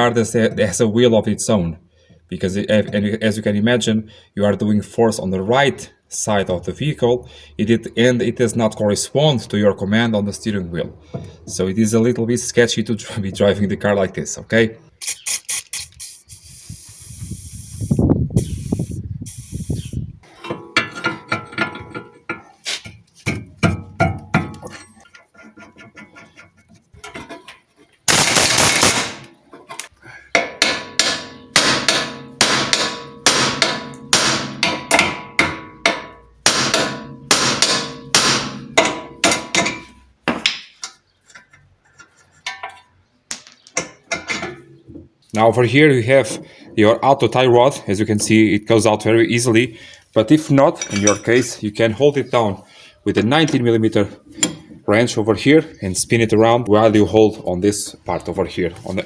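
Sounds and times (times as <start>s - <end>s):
loud hissing burst: 15.0s - 20.0s
hammer striking steel: 30.4s - 40.6s.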